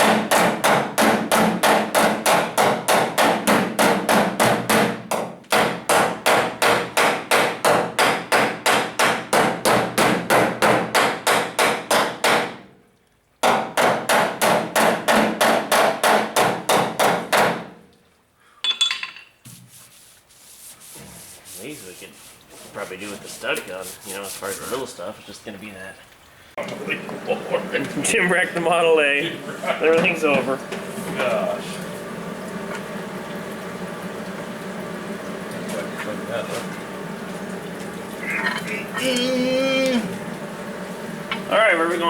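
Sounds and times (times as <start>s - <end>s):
hammer rapping on sheet metal: 0.0s - 12.6s, 13.4s - 17.8s.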